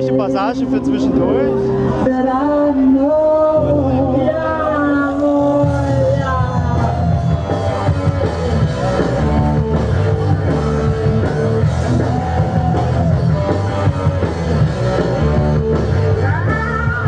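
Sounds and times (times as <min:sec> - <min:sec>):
loud music with heavy drums: 0:05.6 - 0:17.0.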